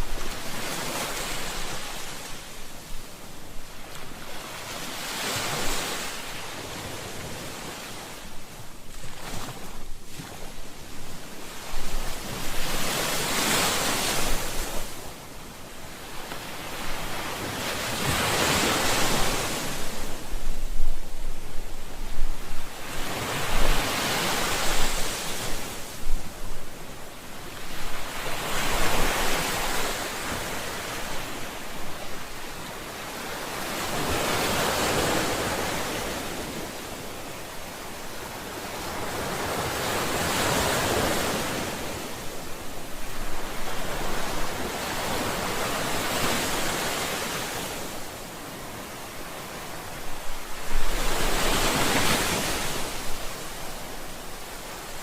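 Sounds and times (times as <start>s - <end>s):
ocean waves breaking: 38.2s - 55.0s.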